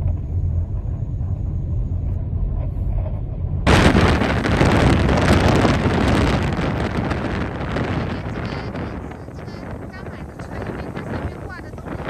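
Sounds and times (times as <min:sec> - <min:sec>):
wind buffeting microphone: 0:03.7 - 0:12.0.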